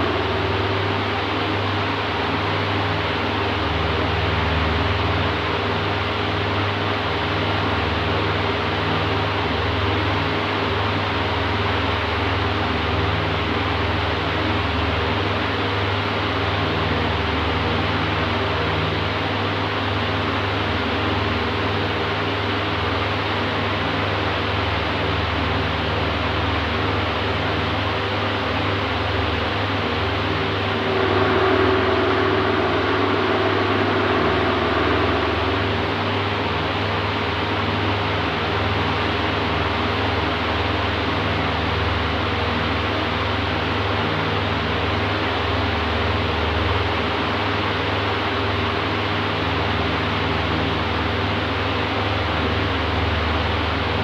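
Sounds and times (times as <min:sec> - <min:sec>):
low motor hum: 0:00.0 - 0:05.4, 0:28.9 - 0:37.6
electric fan air rush: 0:00.0 - 0:54.0.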